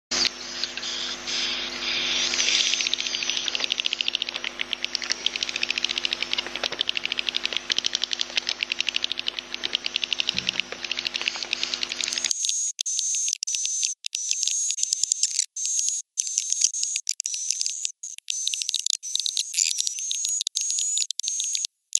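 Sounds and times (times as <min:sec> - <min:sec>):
rapid high bird twittering: 0:00.1 - 0:12.3.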